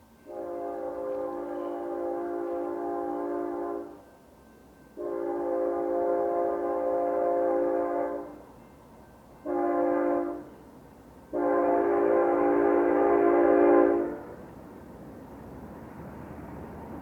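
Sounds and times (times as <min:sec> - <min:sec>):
locomotive air horn blasts: 0:00.2 - 0:04.1, 0:05.0 - 0:08.5, 0:09.4 - 0:10.6, 0:11.3 - 0:14.4.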